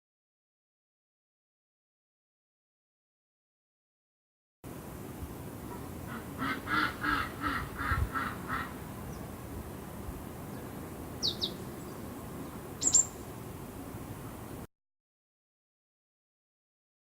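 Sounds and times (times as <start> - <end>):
background noise: 4.7 - 14.7
bird calling: 5.6 - 9.5, 10.4 - 13.3.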